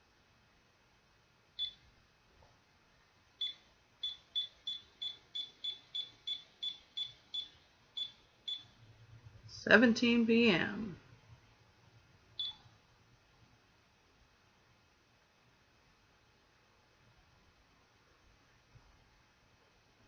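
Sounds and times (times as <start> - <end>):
digital alarm clock beeping: 1.6 - 1.8, 3.4 - 8.8, 12.4 - 12.6.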